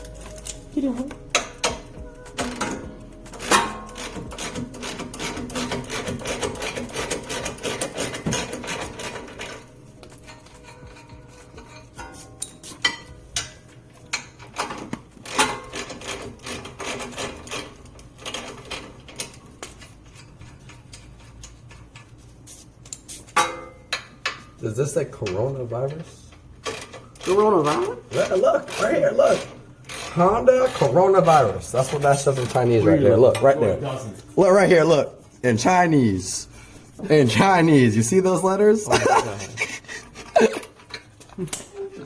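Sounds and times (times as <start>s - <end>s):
rapid mechanical clicking: 1.3s - 9.7s.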